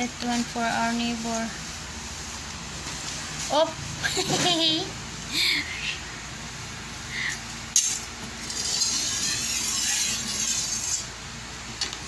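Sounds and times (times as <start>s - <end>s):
blade scraping on sharpener: 7.8s - 11.1s.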